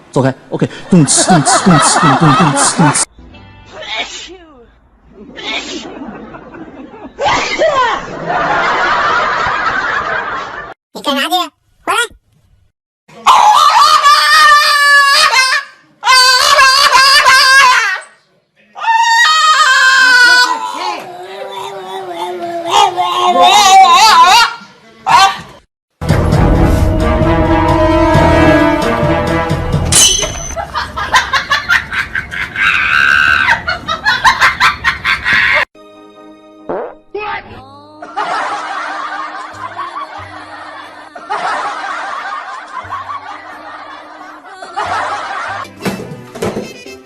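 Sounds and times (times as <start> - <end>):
person laughing loudly: 0.9 - 3.1
loud screams: 13.2 - 18.2, 18.8 - 22.0, 32.6 - 33.7.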